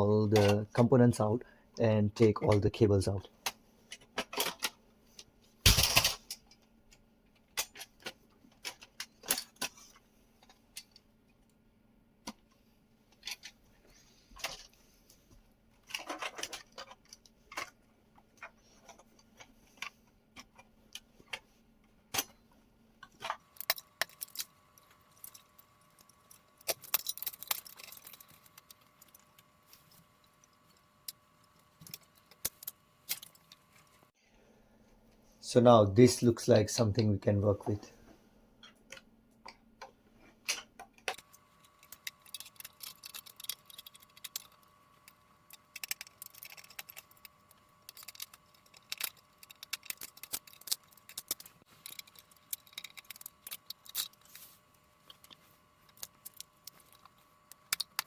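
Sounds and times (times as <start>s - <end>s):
computer parts clicking and rattling: 3.4s - 11.1s, 15.8s - 22.4s, 23.0s - 34.1s, 38.6s - 58.0s.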